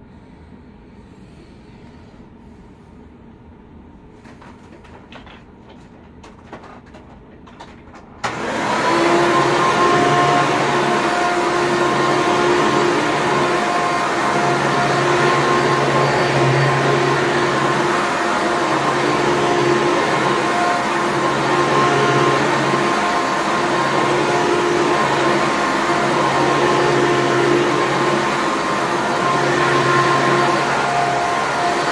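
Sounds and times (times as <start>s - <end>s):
vacuum cleaner running: 4.2s - 31.9s.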